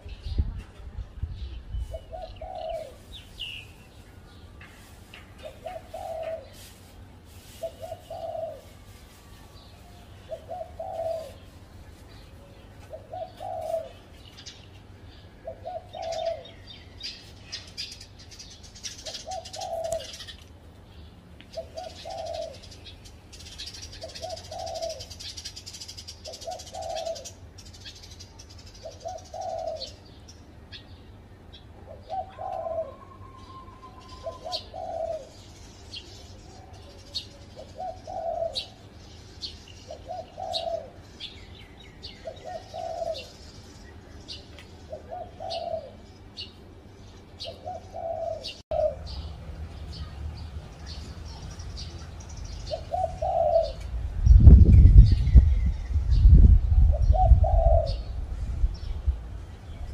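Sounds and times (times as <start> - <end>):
small birds chirping: 0.0 - 59.9
dove cooing: 1.9 - 3.4, 5.4 - 8.9, 10.2 - 11.6, 12.2 - 14.5, 15.4 - 16.6, 19.0 - 20.3, 21.6 - 22.8, 23.4 - 27.4, 28.8 - 30.2, 31.8 - 35.4, 36.6 - 38.9, 39.9 - 41.1, 42.1 - 43.4, 44.9 - 46.5, 47.4 - 49.3, 52.7 - 54.0, 56.8 - 58.2.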